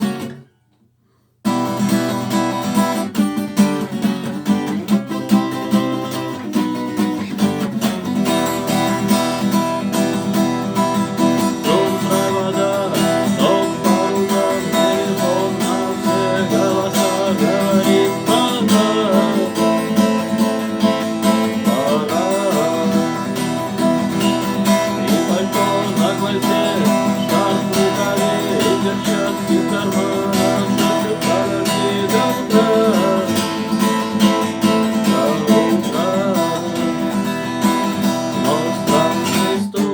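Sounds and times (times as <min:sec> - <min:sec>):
acoustic guitar music: 0:00.0 - 0:39.9.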